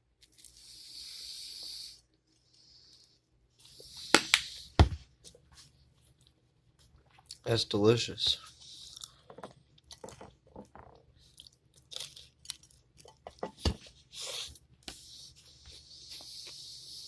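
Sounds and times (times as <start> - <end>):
person chewing crunchy food: 8.5 - 14.6.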